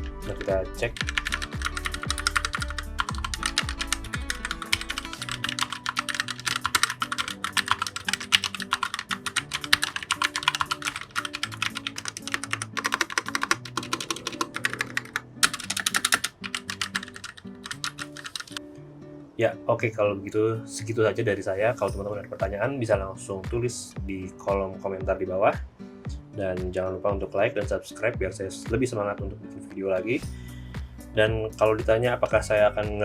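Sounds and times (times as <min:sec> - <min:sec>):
mechanical keyboard typing: 0:00.0 - 0:18.6
background music: 0:00.0 - 0:33.0.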